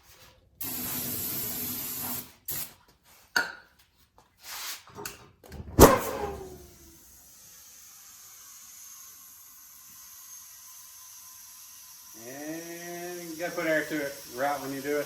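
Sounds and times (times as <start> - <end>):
sharp bang with metallic ringing: 5.8 - 6.5
aerosol can spraying: 12.3 - 15.0.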